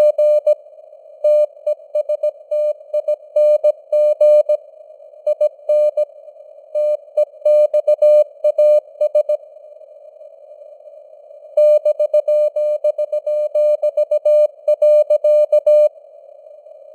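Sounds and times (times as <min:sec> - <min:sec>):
morse code tone: 0:11.6 - 0:15.9.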